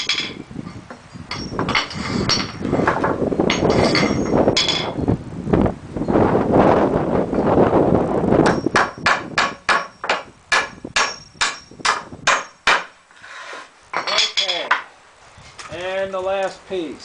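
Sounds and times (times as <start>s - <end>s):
rough noise: 0.0s - 16.7s
hammer blows on nails: 8.4s - 13.0s.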